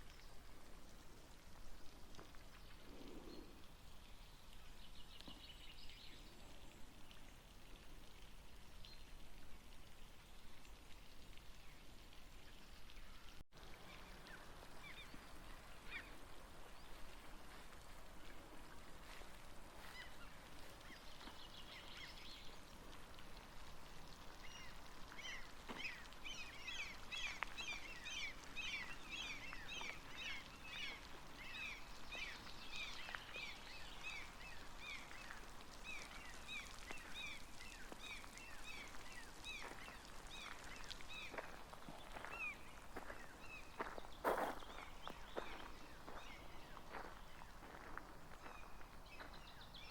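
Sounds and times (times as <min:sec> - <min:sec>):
flock of birds chirping: 0:12.5 - 0:18.4, 0:23.9 - 0:49.9.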